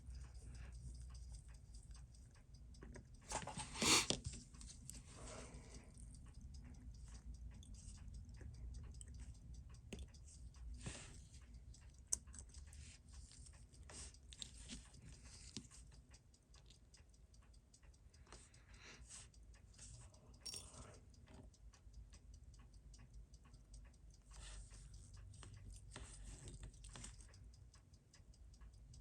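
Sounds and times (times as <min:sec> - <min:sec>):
small clicks and taps: 0:00.0 - 0:29.0.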